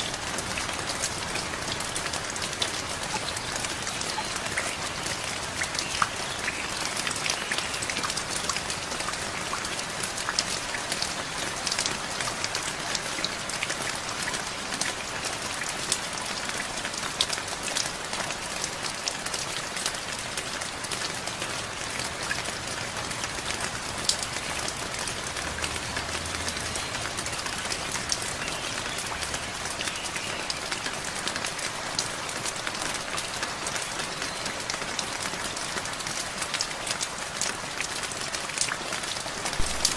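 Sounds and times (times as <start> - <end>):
steady rain: 0.0 - 39.9
raindrops tapping on a surface: 21.9 - 39.9.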